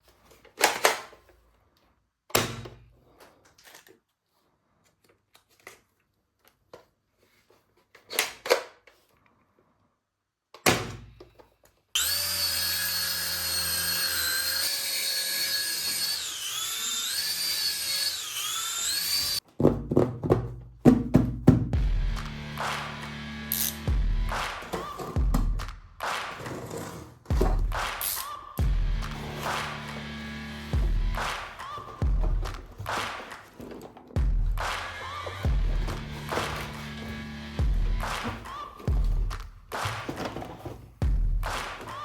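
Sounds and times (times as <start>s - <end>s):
electric toy whirring: 12.0s - 19.4s
handling noises: 26.4s - 42.0s.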